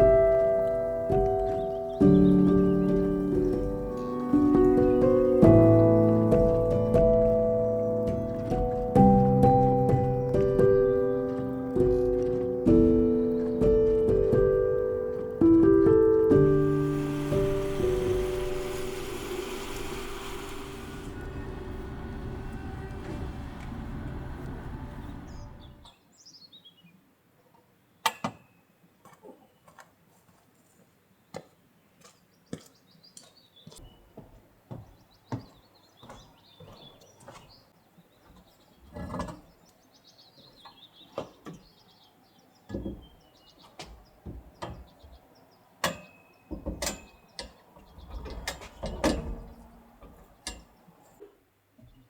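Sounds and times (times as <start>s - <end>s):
dull thumps: 0.0s - 25.8s
small birds chirping: 0.0s - 27.0s, 31.2s - 51.2s.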